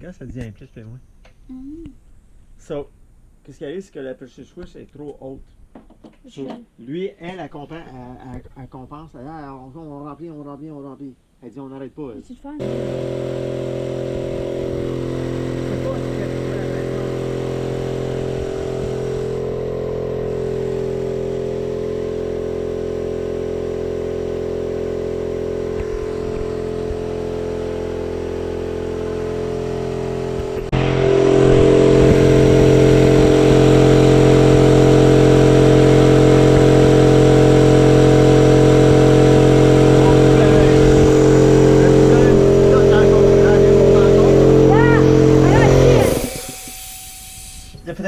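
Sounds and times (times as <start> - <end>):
air compressor running: 12.6 - 48.0.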